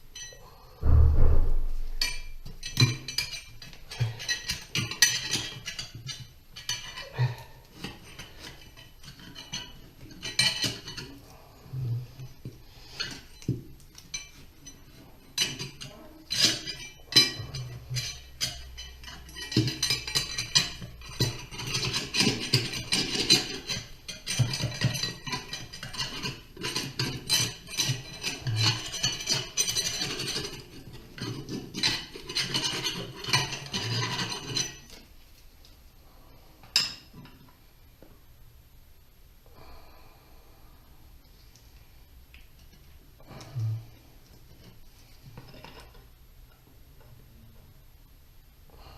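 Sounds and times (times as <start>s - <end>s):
hand tools clinking on metal: 13.0s - 35.0s.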